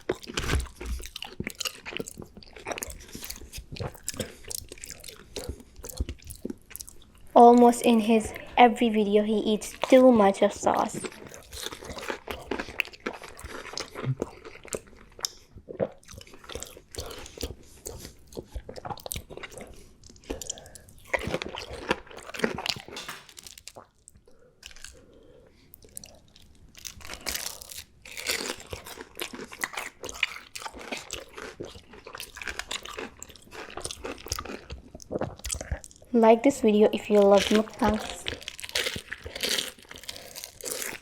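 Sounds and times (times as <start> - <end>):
crunchy bites and chewing: 0.0 - 7.3, 11.0 - 25.1, 25.8 - 36.1, 37.2 - 41.0.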